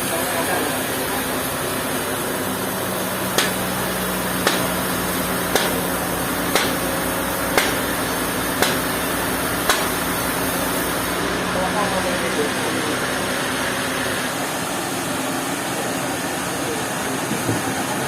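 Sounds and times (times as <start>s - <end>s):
sawmill machinery humming: 0.0s - 18.0s
sharp knocks: 3.4s - 3.7s, 4.4s - 4.8s, 5.5s - 5.9s, 6.5s - 6.8s, 7.5s - 7.9s, 8.6s - 8.9s, 9.7s - 10.0s.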